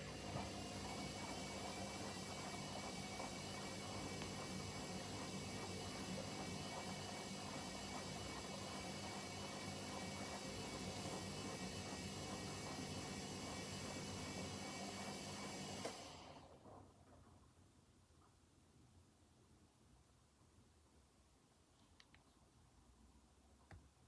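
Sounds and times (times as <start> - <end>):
washing machine humming and whining: 0.0 - 17.1.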